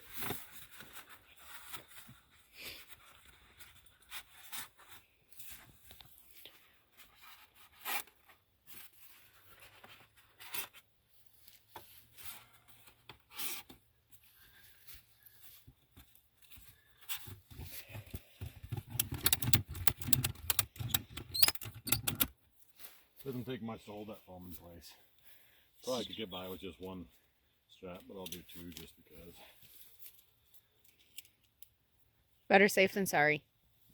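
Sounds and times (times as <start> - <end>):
ratchet clicking: 18.9 - 22.3.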